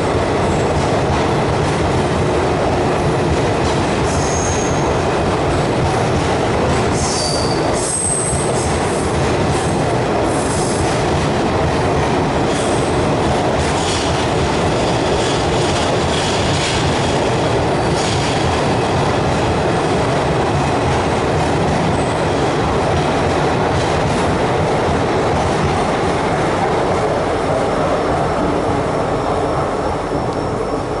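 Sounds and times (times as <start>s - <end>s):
train wheels rumbling on rails: 0.0s - 31.0s
wheel squeals: 7.0s - 8.4s.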